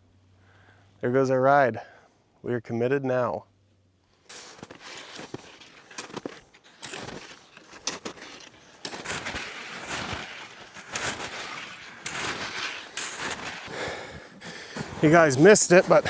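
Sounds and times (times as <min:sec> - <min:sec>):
skis scraping over snow: 0:04.3 - 0:16.0.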